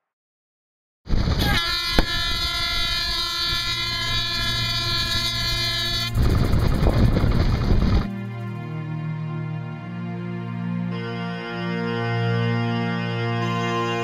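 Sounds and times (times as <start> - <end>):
long horn blast: 1.4 - 14.0
loud rushing noise: 5.6 - 8.8.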